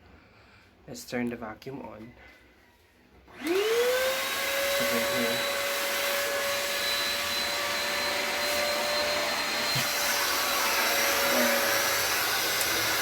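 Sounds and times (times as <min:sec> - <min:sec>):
vacuum cleaner running: 0:03.3 - 0:13.0.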